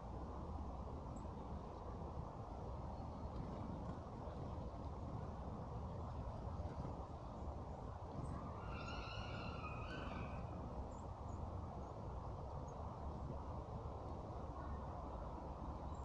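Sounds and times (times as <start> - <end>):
low background rumble: 0.0 - 16.0
bird buzzy call: 8.4 - 10.6
faint high chirps: 8.4 - 10.6.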